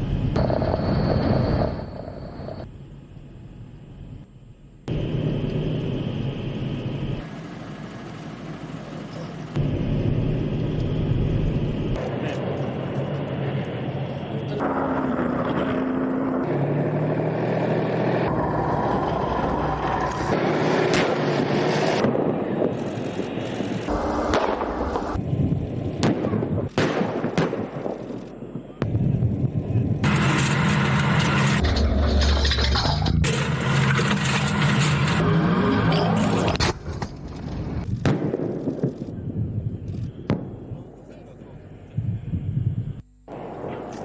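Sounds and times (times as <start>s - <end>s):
military vehicle engines running: 0.0s - 26.8s, 27.9s - 44.0s
sharp crack: 20.3s - 25.2s.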